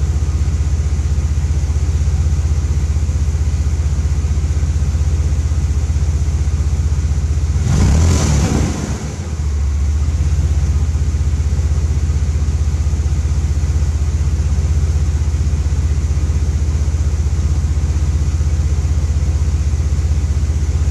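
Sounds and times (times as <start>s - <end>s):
supercharged engine idling: 0.0s - 20.9s
engine revving: 7.5s - 10.1s.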